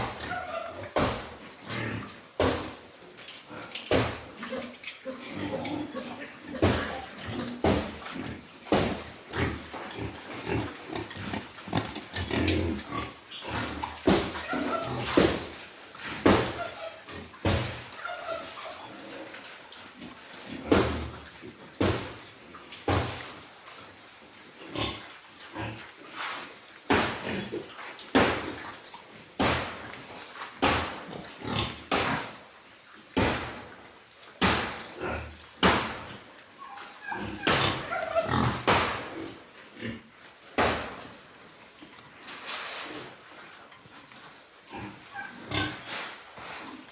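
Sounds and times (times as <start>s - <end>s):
pigs calling: 0.0s - 2.4s, 3.4s - 19.5s, 34.5s - 40.8s, 44.6s - 46.9s.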